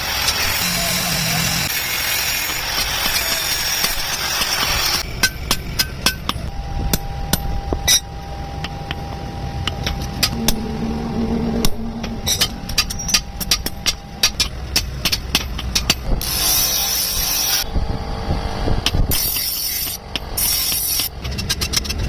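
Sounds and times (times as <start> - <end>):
low steady rumble: 5.0 - 16.2
metal striking metal: 9.6 - 16.2.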